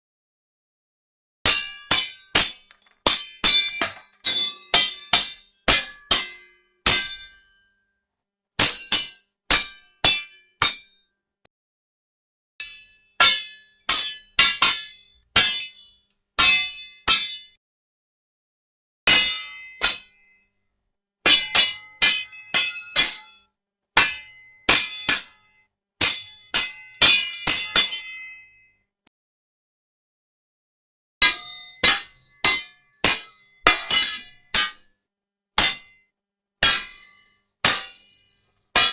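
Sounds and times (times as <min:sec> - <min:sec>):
sword blades clashing: 0:01.5 - 0:07.3, 0:12.6 - 0:17.5, 0:19.1 - 0:20.2, 0:21.3 - 0:23.4, 0:24.0 - 0:25.4, 0:31.2 - 0:34.9, 0:35.6 - 0:36.0, 0:36.6 - 0:38.9.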